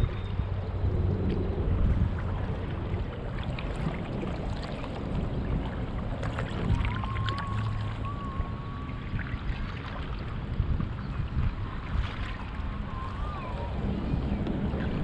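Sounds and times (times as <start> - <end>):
wind rumble on microphone: 0.0 - 15.0
water splashing from paddling: 1.2 - 15.0.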